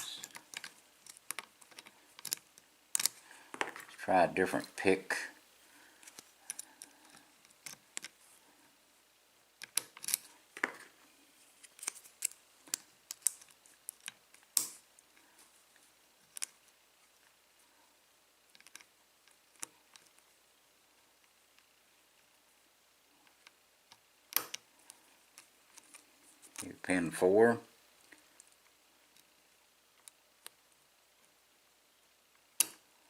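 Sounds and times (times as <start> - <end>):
lock picking clicks and scrapes: 0.2 - 3.2, 6.0 - 8.2, 9.6 - 10.3.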